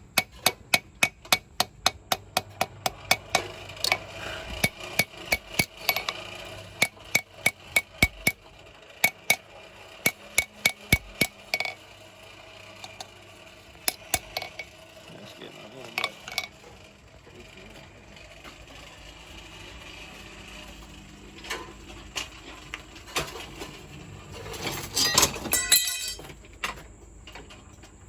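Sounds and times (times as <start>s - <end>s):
hammer ringing on anvil: 25.0s - 26.2s.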